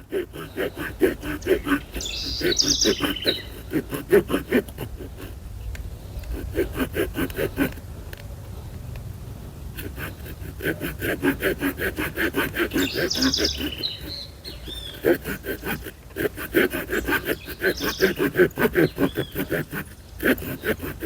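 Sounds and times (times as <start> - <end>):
birds chirping: 0.0 - 4.6, 9.9 - 16.0, 16.6 - 21.0
saw blade cutting a log: 0.0 - 7.9, 9.7 - 21.0.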